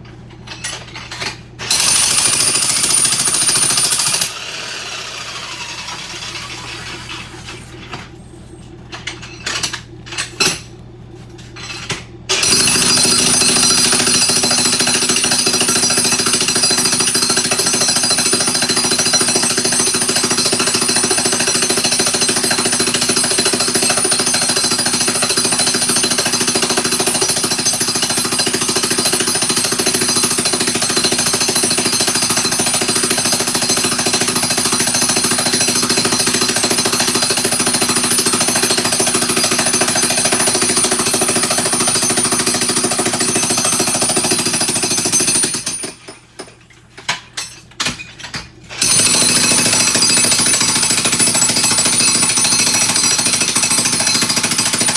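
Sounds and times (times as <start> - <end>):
jackhammer breaking floor tile: 0.5 - 8.0, 11.6 - 46.5, 47.1 - 54.9.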